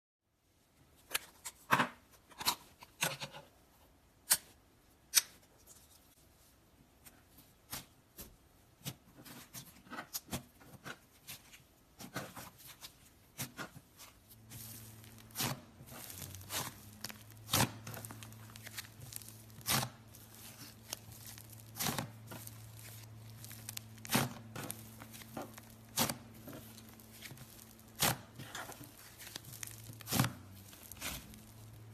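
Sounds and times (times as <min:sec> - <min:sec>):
low steady hum: 0:14.0 - 0:31.9.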